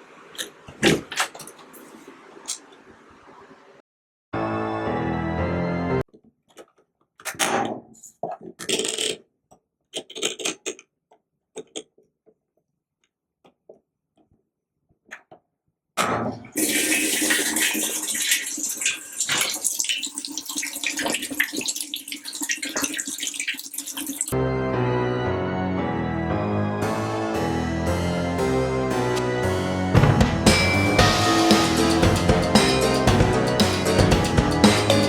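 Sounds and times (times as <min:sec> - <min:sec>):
water running: 0:16.6 - 0:24.4, 0:30.0 - 0:35.0.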